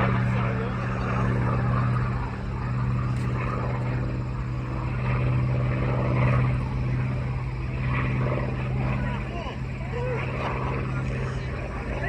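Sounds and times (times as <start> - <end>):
propeller aircraft engine droning: 0.0 - 12.0.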